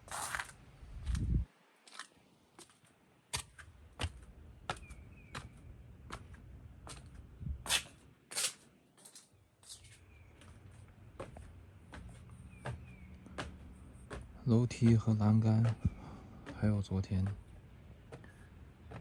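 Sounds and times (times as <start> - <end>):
footsteps walking: 0.0 - 19.0.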